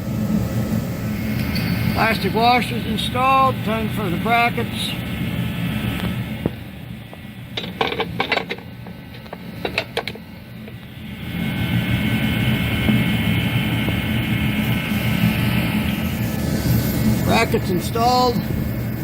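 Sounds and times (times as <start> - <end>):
mechanical whirring hum: 0.0 - 19.0
metal hardware clinking: 7.6 - 10.2.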